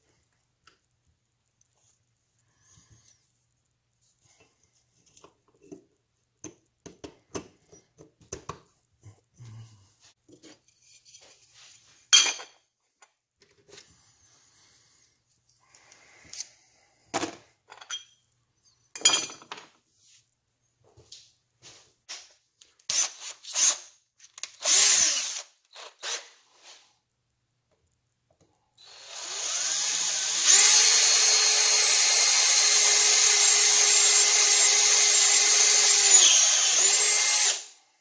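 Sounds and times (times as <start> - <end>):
power drill bursts: 24.6 - 26.2, 28.8 - 37.7.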